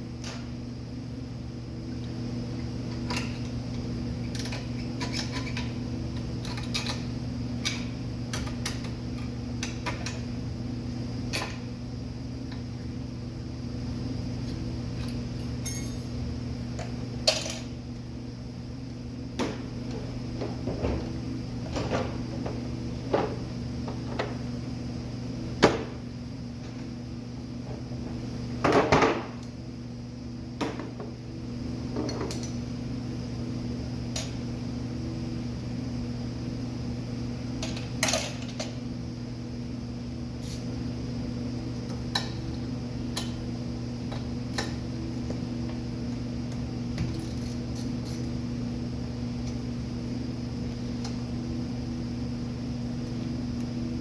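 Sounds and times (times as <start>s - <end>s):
steady low hum: 0.0s - 54.0s
metal tools clinking and knocking: 15.6s - 16.1s.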